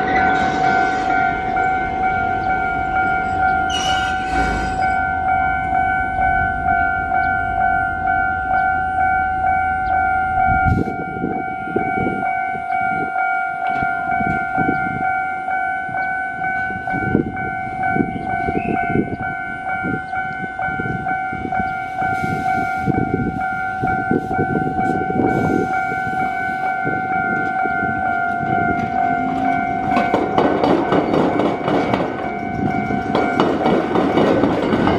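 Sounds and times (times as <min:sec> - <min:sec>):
level-crossing alarm ringing: 0:00.0 - 0:34.9
train wheels clattering over rail joints: 0:28.4 - 0:34.9.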